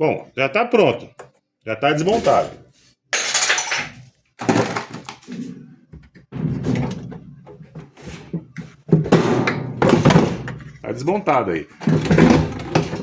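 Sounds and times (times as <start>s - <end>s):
metal parts knocking and scraping: 6.5s - 11.0s, 11.8s - 13.0s.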